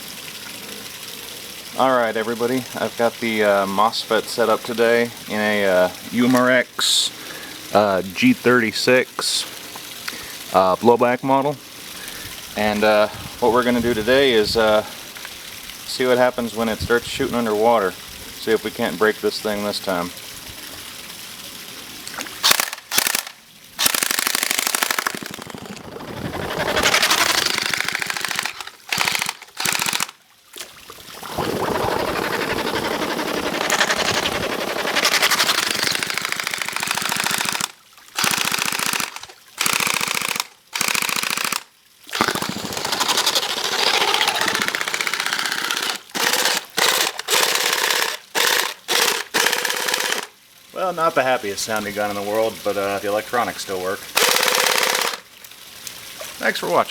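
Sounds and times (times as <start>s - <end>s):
airsoft rifle firing underwater: 22.4s - 30.2s, 31.0s - 50.3s, 54.2s - 55.2s.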